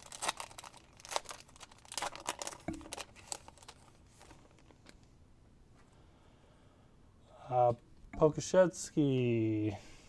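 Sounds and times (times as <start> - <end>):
foil wrapper crinkling: 0.0 - 5.0.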